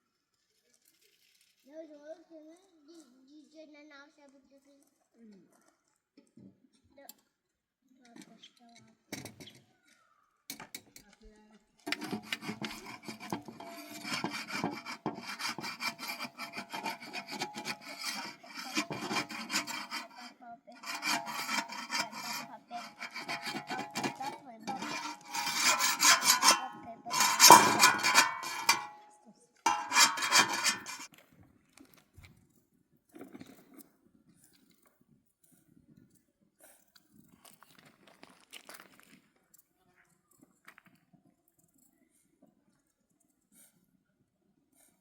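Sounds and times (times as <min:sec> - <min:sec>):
rapid scraping strokes: 0:11.9 - 0:29.0, 0:29.7 - 0:31.1.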